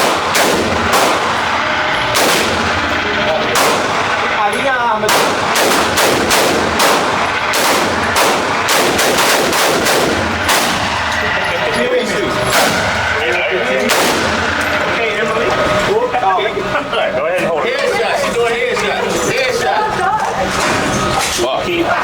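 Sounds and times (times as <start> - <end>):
rapid gunshots: 0.0 - 11.4, 12.4 - 13.2, 13.9 - 14.8.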